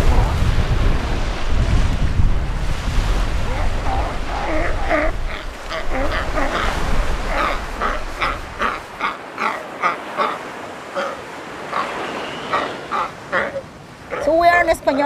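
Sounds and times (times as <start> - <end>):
low wind or surf rumble: 0.0 - 15.0
sea lions barking: 3.3 - 14.8.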